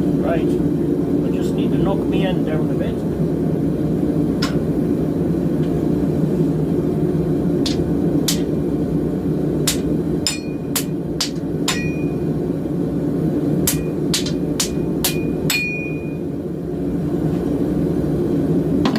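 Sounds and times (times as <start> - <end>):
hammer striking steel bar: 7.7 - 8.5, 9.7 - 12.2, 13.7 - 16.2.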